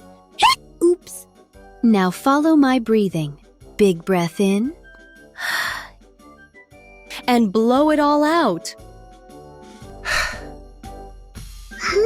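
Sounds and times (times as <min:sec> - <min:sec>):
soft background music: 0:00.0 - 0:12.0
breathy cartoon vocal sound: 0:10.0 - 0:10.5.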